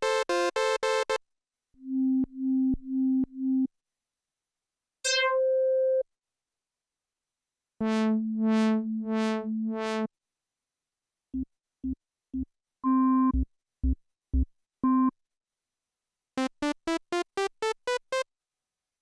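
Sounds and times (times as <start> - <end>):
synthesizer notes: 7.8 - 10.1.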